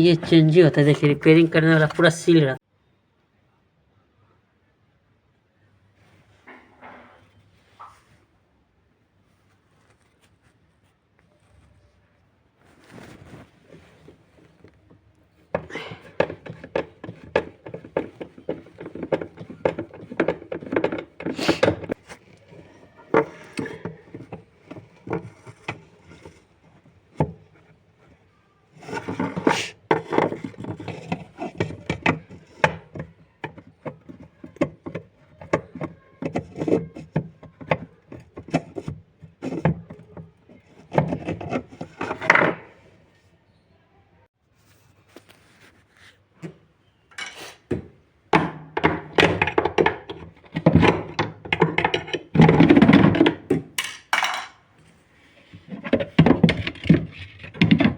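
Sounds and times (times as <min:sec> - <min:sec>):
tools clicking and knocking: 0:15.5 - 0:28.1, 0:28.8 - 0:42.7, 0:46.4 - 0:54.6, 0:55.6 - 0:57.9.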